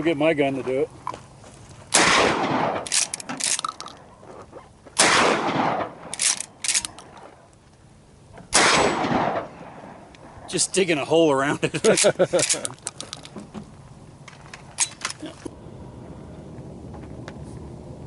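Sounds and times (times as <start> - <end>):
rifle shots with echo: 1.9 - 3.6, 5.0 - 7.2, 8.5 - 10.1
sharp cracks: 1.9 - 4.1, 5.0 - 7.6, 8.4 - 10.4.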